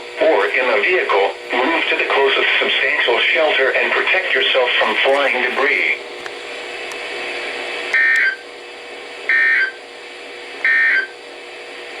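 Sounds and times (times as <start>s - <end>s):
receiver hiss: 0.0s - 9.3s.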